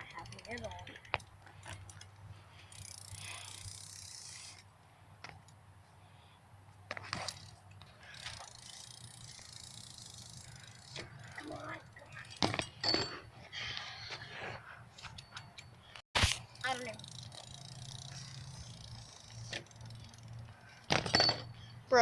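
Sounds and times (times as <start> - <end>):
bike hub ratcheting clicks: 0.0 - 5.6, 7.2 - 12.4, 16.4 - 21.6.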